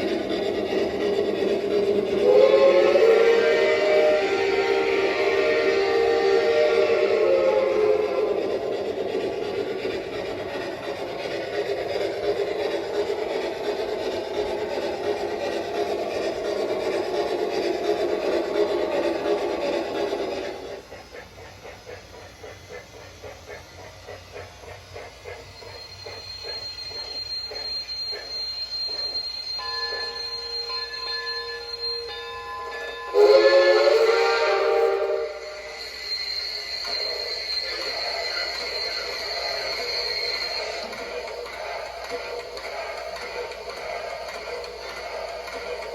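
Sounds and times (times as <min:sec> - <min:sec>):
model steam locomotive chuffing: 0:00.0 - 0:45.9
loud whistle blast: 0:02.2 - 0:08.3, 0:33.1 - 0:40.8.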